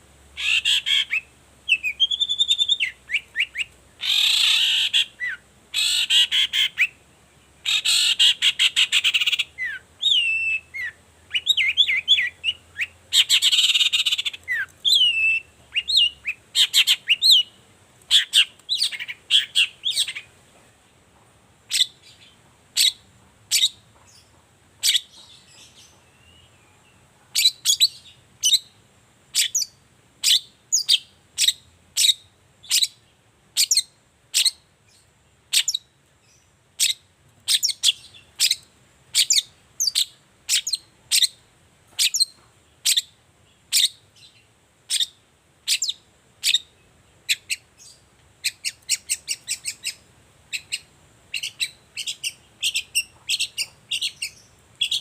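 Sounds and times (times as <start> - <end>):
bird sharp piercing call: 0.4 - 7.0, 7.6 - 20.3, 44.9 - 46.7, 47.3 - 55.0.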